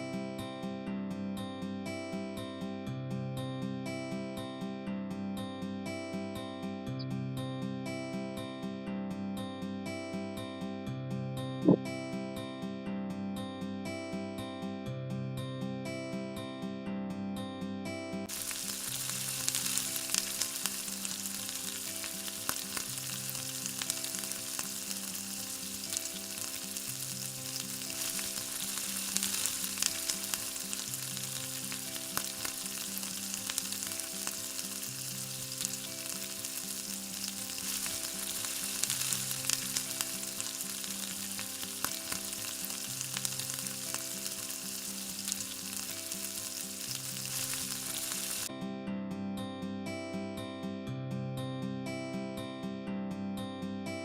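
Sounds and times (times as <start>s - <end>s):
soft background music: 3.9s - 54.0s
chicken sizzling in oil: 18.3s - 48.5s.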